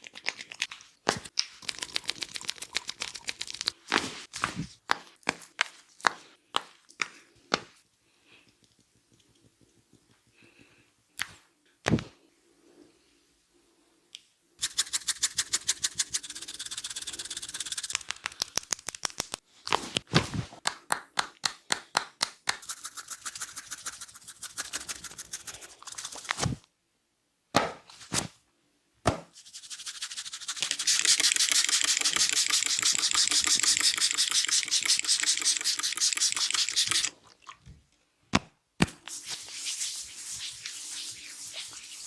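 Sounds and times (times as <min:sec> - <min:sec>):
hands slapping head in massage: 0:17.9 - 0:22.7, 0:29.0 - 0:29.4.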